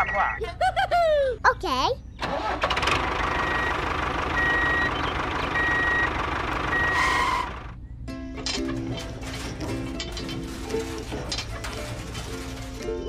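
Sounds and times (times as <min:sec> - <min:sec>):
engine noise: 0:02.2 - 0:13.0
vehicle reversing alarm beeping: 0:03.1 - 0:07.6.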